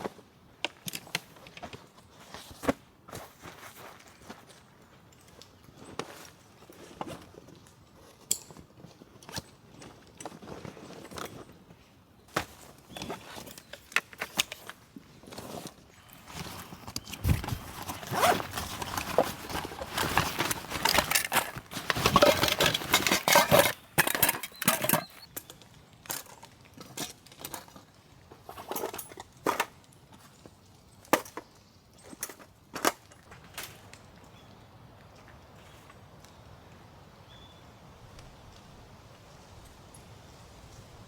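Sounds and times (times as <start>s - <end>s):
gear rustling and scraping: 12.3s - 30.5s.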